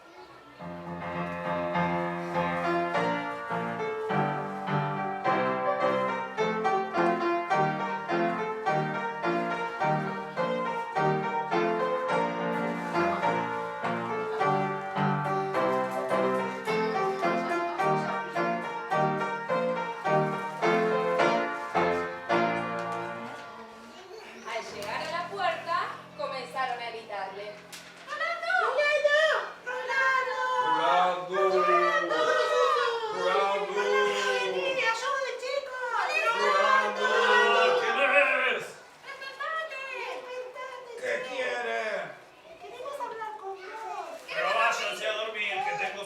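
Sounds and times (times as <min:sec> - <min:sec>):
piano music: 0:00.7 - 0:23.8.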